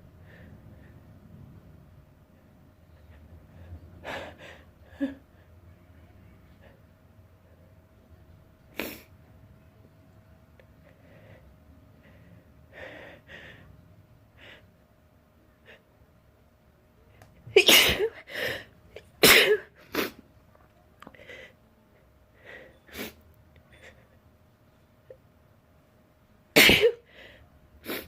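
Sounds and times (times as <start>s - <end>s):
person sneezing: 17.6s - 18.2s, 19.2s - 20.2s, 26.6s - 27.0s.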